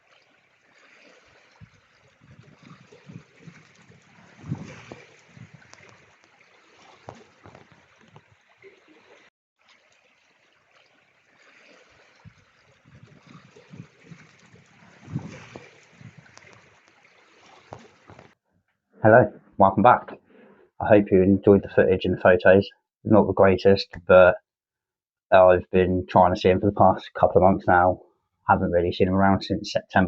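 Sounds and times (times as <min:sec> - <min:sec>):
wind buffeting microphone: 0:01.6 - 0:05.8, 0:14.7 - 0:16.4.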